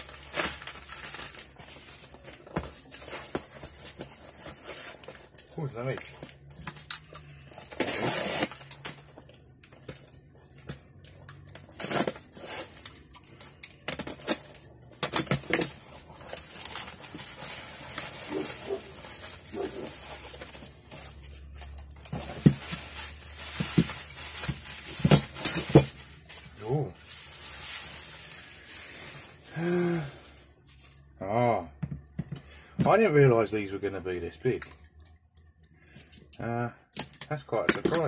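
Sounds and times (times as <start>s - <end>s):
packaging rustling and tearing: 0.0s - 31.0s.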